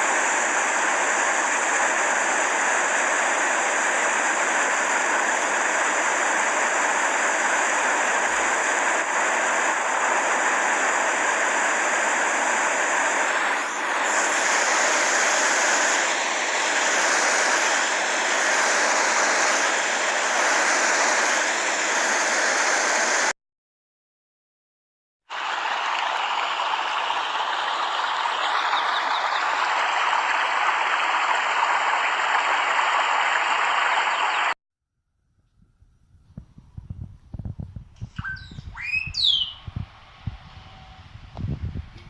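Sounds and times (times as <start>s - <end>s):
rushing water: 0.0s - 23.3s, 25.3s - 34.6s.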